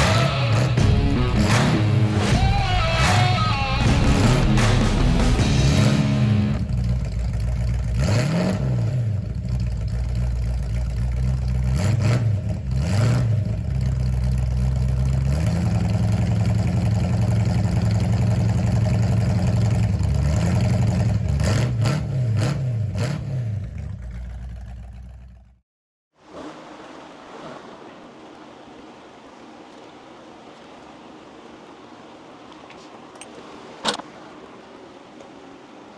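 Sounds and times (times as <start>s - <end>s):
rock music with distorted guitar: 0.0s - 6.7s
drum hits: 0.0s - 6.8s.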